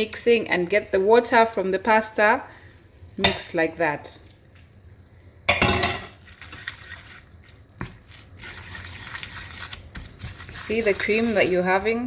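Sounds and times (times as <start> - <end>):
utensil scraping frying pan: 5.5 - 12.0.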